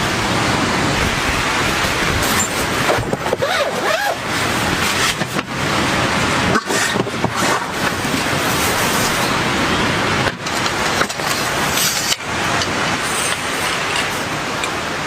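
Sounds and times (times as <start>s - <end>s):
heavy rain pouring: 0.0s - 15.0s.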